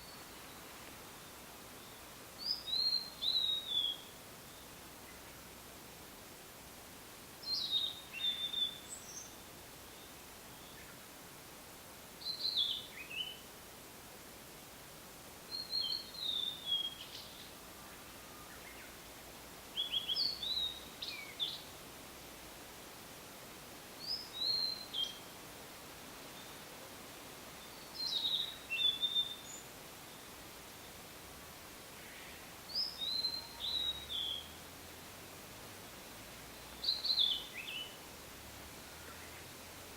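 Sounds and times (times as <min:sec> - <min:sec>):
bird singing whistled notes: 0:01.8 - 0:05.2, 0:07.4 - 0:11.0, 0:12.2 - 0:13.4, 0:15.5 - 0:19.0, 0:19.7 - 0:21.7, 0:24.0 - 0:25.3, 0:27.6 - 0:29.7, 0:32.0 - 0:34.6, 0:36.7 - 0:38.0.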